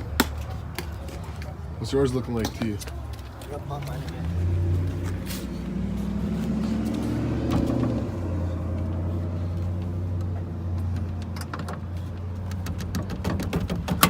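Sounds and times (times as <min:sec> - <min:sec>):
car engine idling: 0:02.9 - 0:14.0.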